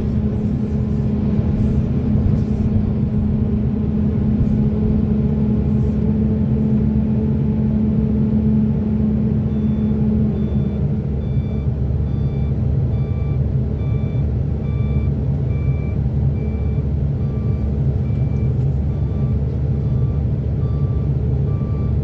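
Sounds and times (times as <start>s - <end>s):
excavator diesel engine drone: 0.0s - 22.0s
truck reversing alarm beeping: 9.3s - 22.0s.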